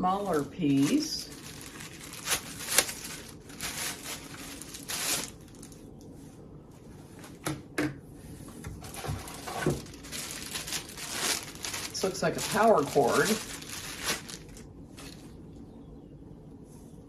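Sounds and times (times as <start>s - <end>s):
packaging rustling: 0.0s - 5.9s, 8.8s - 15.4s.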